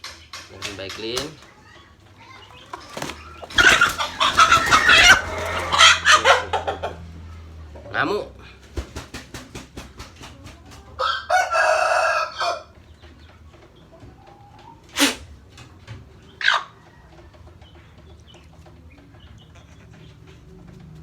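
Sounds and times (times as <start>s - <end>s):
rooster crowing: 3.4s - 6.5s, 11.0s - 12.7s.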